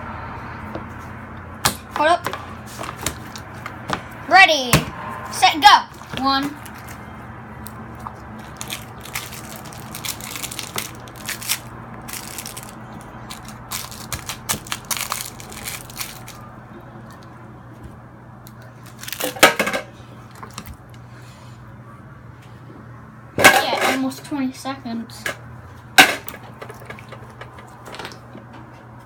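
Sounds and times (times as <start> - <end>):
hands squelching slime: 5.9 - 7.0, 7.6 - 16.4.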